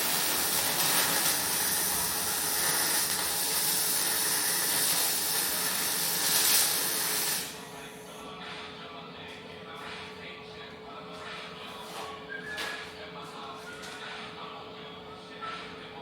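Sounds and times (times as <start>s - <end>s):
welding arc hissing crackle: 0.0s - 7.6s.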